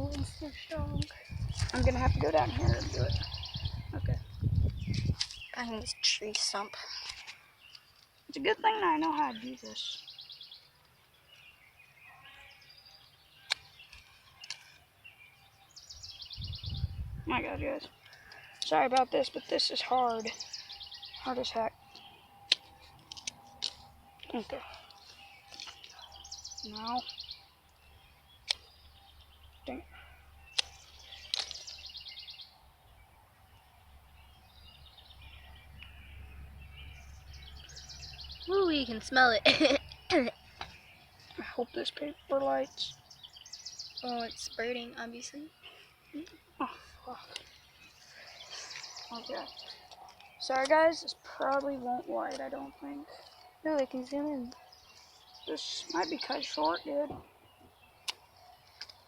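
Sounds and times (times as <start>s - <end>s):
wind rumble on microphone: 0.0s - 5.5s, 16.3s - 17.8s
faint birdsong: 0.0s - 59.0s.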